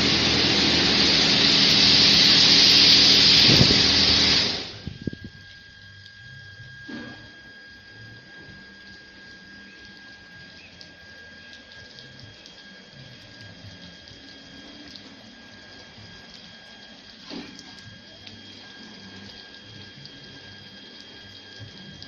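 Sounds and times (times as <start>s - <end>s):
water spraying hiss: 0.0s - 5.2s, 10.8s - 22.0s
high-pitched whine: 0.0s - 22.0s.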